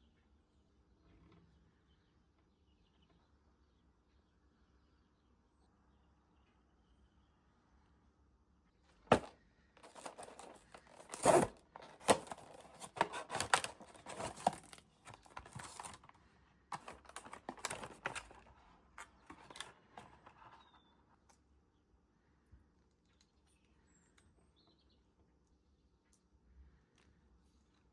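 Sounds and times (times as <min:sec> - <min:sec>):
packaging tearing and crinkling: 0:09.1 - 0:16.1, 0:16.7 - 0:18.5.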